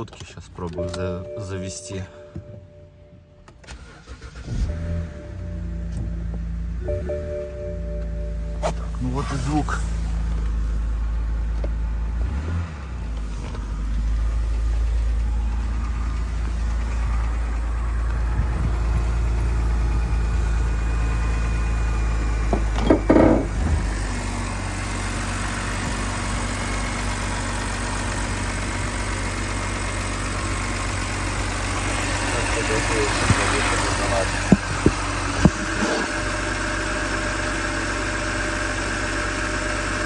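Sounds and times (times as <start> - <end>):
car engine idling with knocking: 7.4 - 12.4, 13.0 - 40.0.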